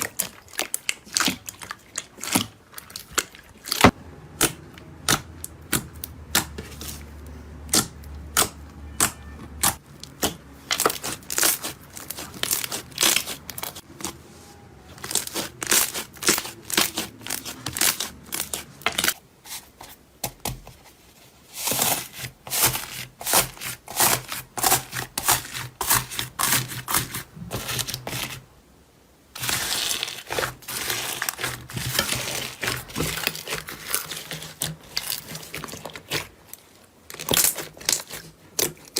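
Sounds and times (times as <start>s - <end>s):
slime crackling and popping: 7.7s - 13.8s, 15.0s - 19.2s, 29.4s - 38.9s.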